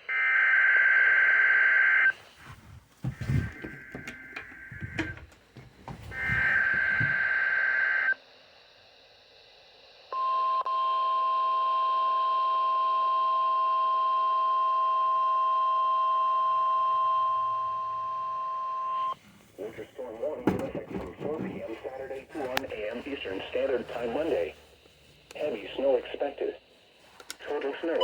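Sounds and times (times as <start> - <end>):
steady warning alarm tone: 3.1 - 8.2, 11.0 - 26.7.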